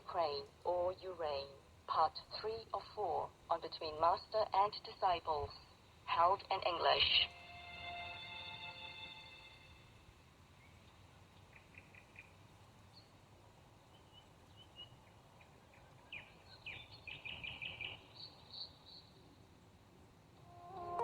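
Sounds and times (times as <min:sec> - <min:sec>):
low steady hiss: 0:00.0 - 0:21.0
small birds chirping: 0:13.9 - 0:19.2.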